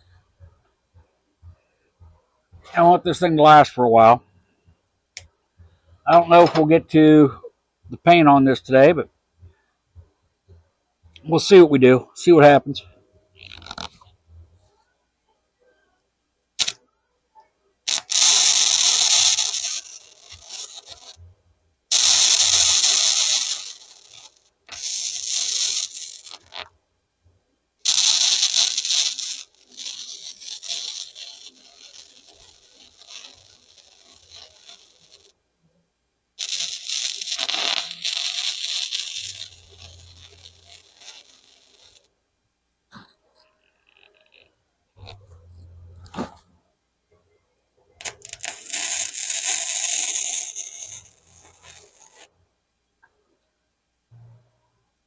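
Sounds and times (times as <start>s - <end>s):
arc welder crackling: 13.4s - 14.0s, 16.6s - 16.8s, 17.9s - 21.2s, 21.9s - 26.7s, 27.8s - 35.4s, 36.4s - 42.1s, 48.0s - 52.3s.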